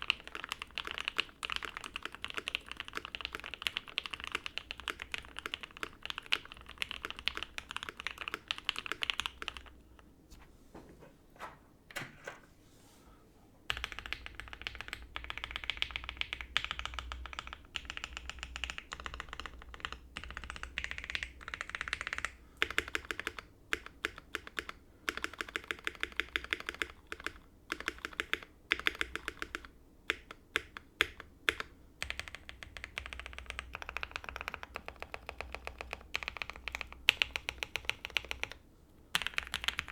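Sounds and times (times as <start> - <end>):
typing on mechanical keyboard: 0.0 - 9.8, 13.7 - 39.9.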